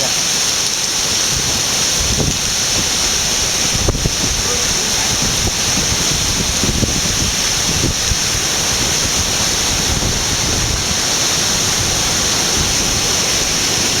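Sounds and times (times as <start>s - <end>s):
heavy rain pouring: 0.0s - 14.0s
strong wind: 1.0s - 14.0s.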